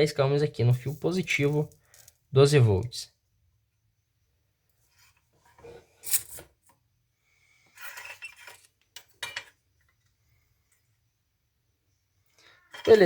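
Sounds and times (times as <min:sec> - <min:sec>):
metal tools clinking and scraping: 0:05.1 - 0:06.5, 0:07.7 - 0:09.6, 0:12.7 - 0:13.0.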